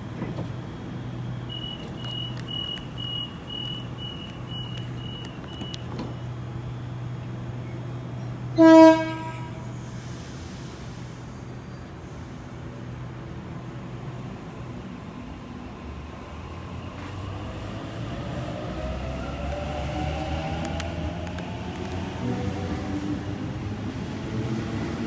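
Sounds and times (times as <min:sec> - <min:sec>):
train low hum: 0:00.0 - 0:25.0
short high beeps: 0:01.5 - 0:05.8
train horn blast: 0:08.6 - 0:09.8.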